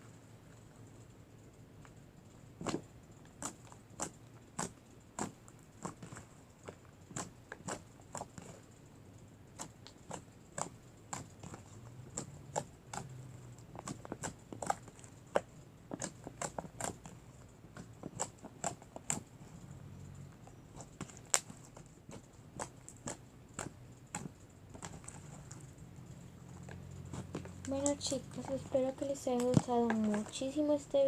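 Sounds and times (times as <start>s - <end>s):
fingers poking slime: 2.6s - 8.6s, 9.5s - 19.5s, 20.4s - 25.8s.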